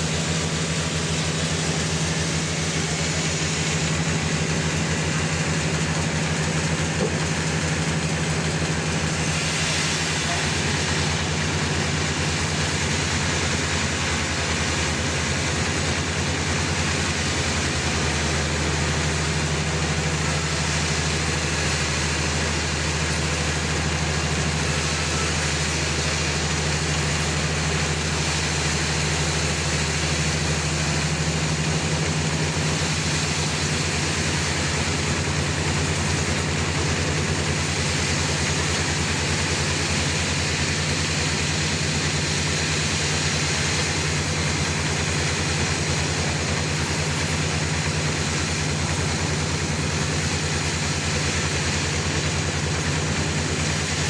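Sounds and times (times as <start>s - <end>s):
sawmill engine drone: 0.0s - 54.0s.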